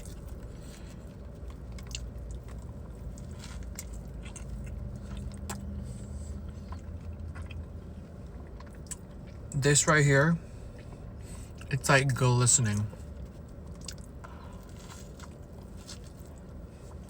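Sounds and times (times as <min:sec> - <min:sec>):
person chewing: 0:00.0 - 0:09.5, 0:13.0 - 0:17.0
steady low hum: 0:00.0 - 0:17.0.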